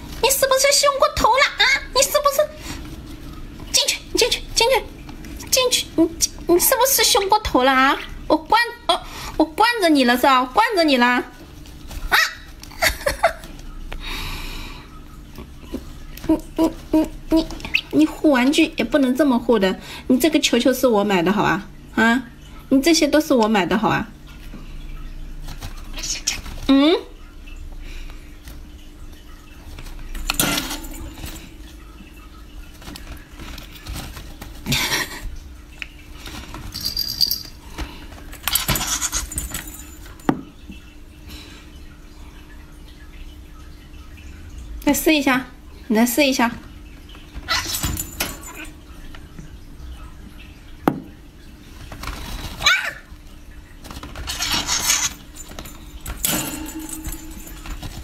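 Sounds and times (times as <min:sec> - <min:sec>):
cage toys rattling and jangling: 0:30.2 - 0:31.6, 0:36.2 - 0:40.3, 0:47.5 - 0:48.8, 0:53.8 - 0:58.0.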